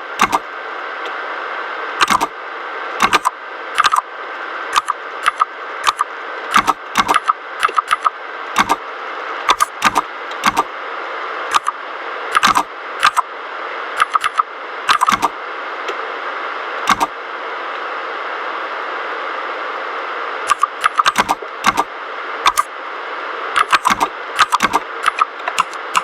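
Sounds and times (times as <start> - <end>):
mechanical keyboard typing: 2.0 - 2.3, 3.0 - 4.0, 4.8 - 8.8, 9.5 - 10.7, 11.5 - 11.8, 12.4 - 13.2, 14.0 - 15.3, 16.9 - 17.1, 20.5 - 21.9, 22.5 - 22.7, 23.6 - 26.0.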